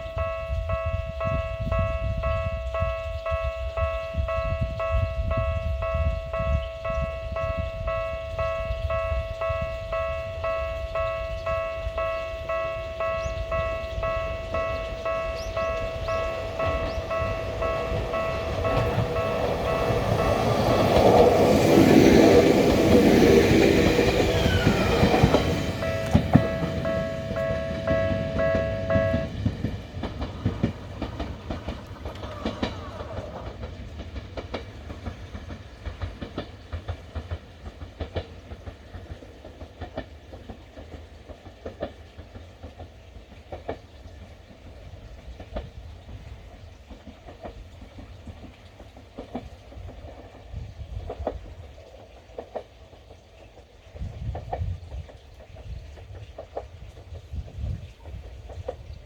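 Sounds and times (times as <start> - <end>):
low train rumble: 0.0 - 59.0
train wheels clicking over rail joints: 0.2 - 59.0.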